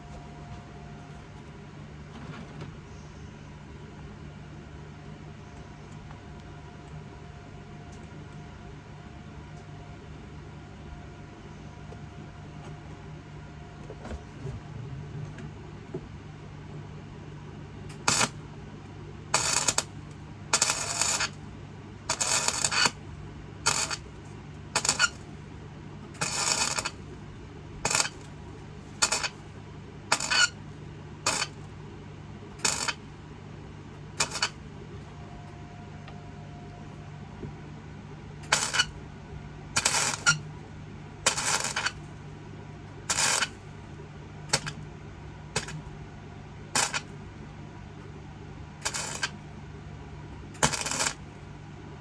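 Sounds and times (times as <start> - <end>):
steady low hum: 0.0 - 52.0
welding arc crackling: 18.0 - 18.4, 19.3 - 19.9, 20.5 - 21.4, 22.1 - 23.0, 23.6 - 24.1, 24.8 - 25.2, 26.2 - 27.0, 27.8 - 28.3, 28.9 - 29.4, 30.1 - 30.6, 31.2 - 31.6, 32.6 - 33.0, 34.2 - 34.6, 38.4 - 39.0, 39.8 - 40.4, 41.2 - 42.0, 43.0 - 43.6, 44.5 - 44.8, 45.6 - 45.9, 46.8 - 47.1, 48.8 - 49.4, 50.6 - 51.3.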